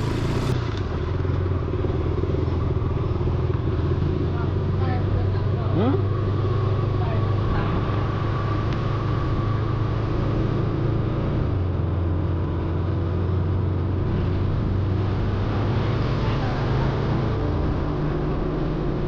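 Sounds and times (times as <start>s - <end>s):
rushing noise: 0.0s - 0.7s
motorcycle engine running: 0.0s - 19.0s.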